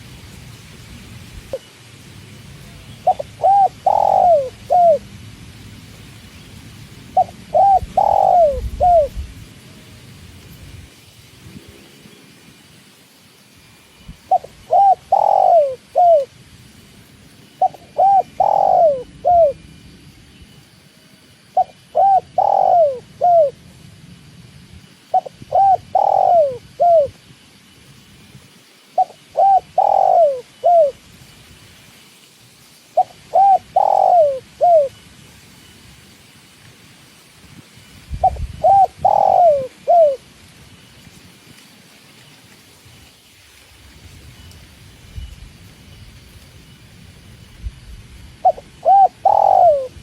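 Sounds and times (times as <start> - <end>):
dove cooing: 3.0 - 5.1, 7.1 - 9.2, 14.3 - 16.3, 17.6 - 19.6, 21.6 - 23.6, 25.1 - 27.1, 29.0 - 31.0, 33.0 - 35.0, 38.2 - 40.3, 48.4 - 50.0.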